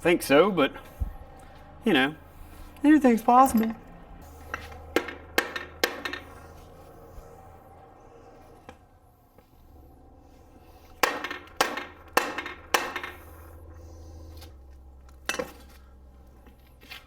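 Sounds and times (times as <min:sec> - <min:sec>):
hammer striking metal engine case: 0:04.5 - 0:06.4, 0:11.0 - 0:13.4.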